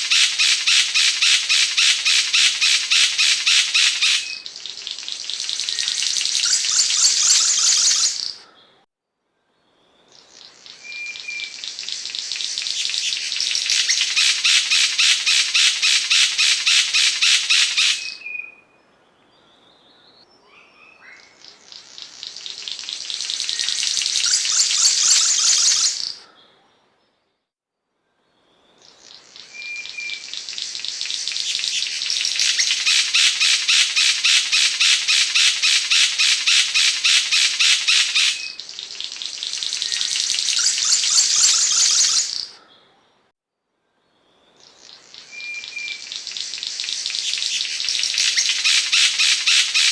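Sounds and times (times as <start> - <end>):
songbird rasping trills: 0.0 - 8.8, 20.8 - 26.2, 28.9 - 42.6, 44.6 - 49.9.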